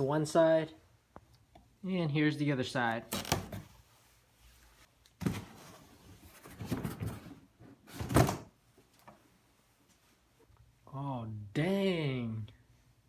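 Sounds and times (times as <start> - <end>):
cardboard packaging rustling: 5.2 - 8.4
box bumping: 5.2 - 8.5.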